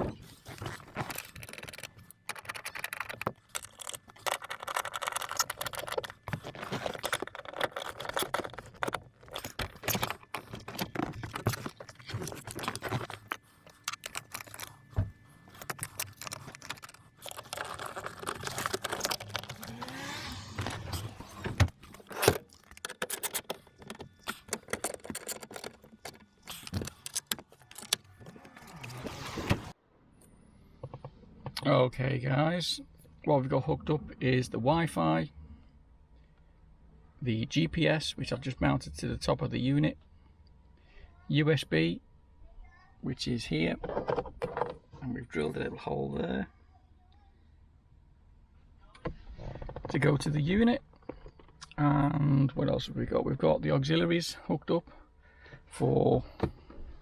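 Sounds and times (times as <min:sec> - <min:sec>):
hands handling cables and plastic parts: 0:00.0 - 0:29.6.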